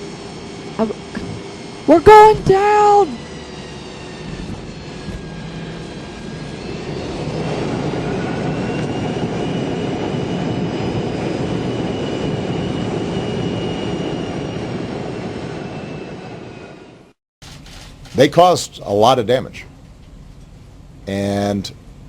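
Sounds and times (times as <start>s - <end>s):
aircraft rushing roar: 0.0s - 17.2s
faint high whine: 0.0s - 22.0s.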